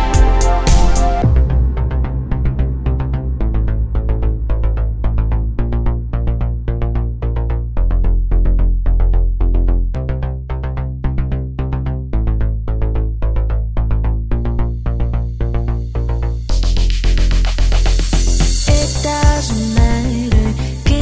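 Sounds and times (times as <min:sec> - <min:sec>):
electronic dance music: 0:00.0 - 0:01.4, 0:16.5 - 0:21.0.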